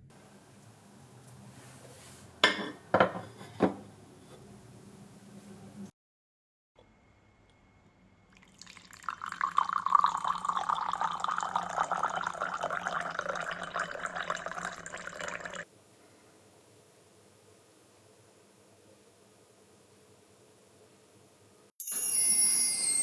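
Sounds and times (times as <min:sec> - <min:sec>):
liquid pouring into a vessel: 0:08.3 - 0:15.6.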